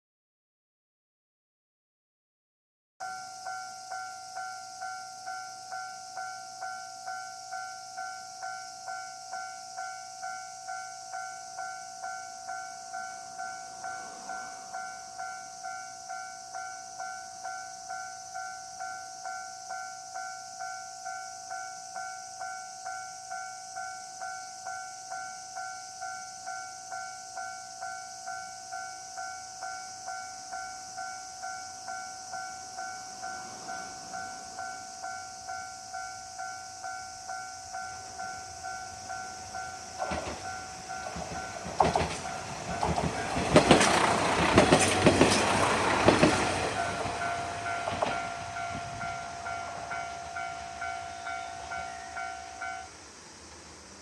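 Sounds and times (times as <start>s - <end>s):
train wheels clattering: 39.6s - 52.0s
level crossing bell ringing: 46.8s - 52.9s.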